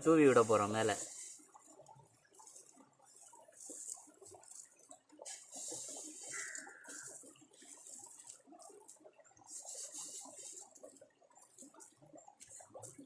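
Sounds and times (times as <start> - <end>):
faint hissing and rustling from pot: 0.0 - 13.0.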